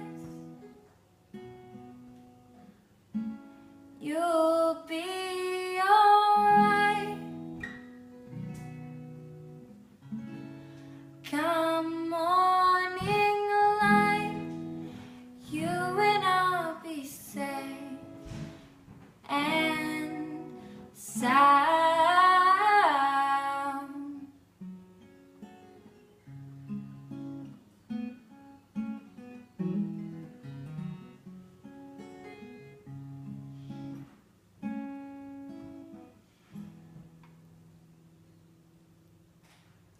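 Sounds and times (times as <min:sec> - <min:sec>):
girl singing: 0:00.0 - 0:00.7, 0:04.0 - 0:07.8, 0:11.2 - 0:24.4
acoustic guitar picking: 0:00.0 - 0:38.4.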